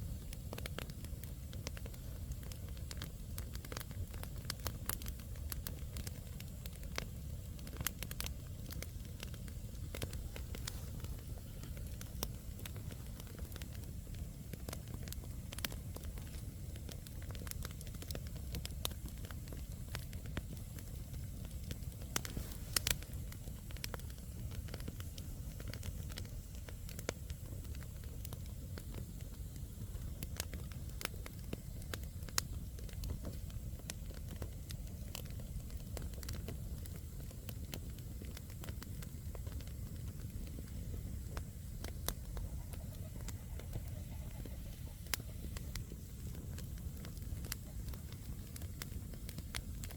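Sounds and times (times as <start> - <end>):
campfire burning: 0.0 - 49.9
crackles and pops of logs: 0.0 - 49.9.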